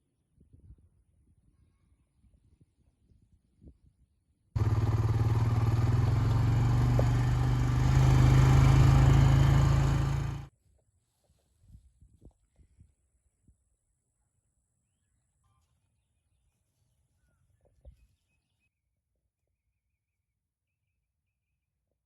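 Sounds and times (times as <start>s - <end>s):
engine running: 4.6s - 10.5s.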